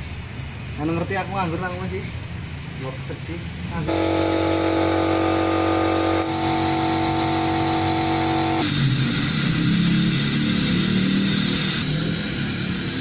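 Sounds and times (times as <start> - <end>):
car engine revving: 3.9 - 13.0.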